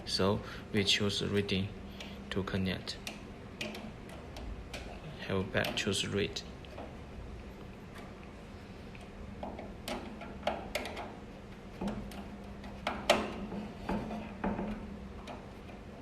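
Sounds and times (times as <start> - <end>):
faint steady hum: 0.0 - 16.0
clicks and metallic knocks: 2.9 - 7.0, 9.0 - 15.9.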